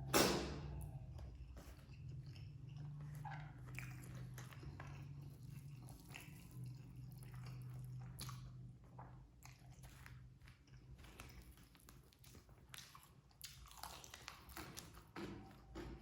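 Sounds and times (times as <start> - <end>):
low steady hum: 0.0 - 12.2
person chewing and biting food: 0.1 - 16.0.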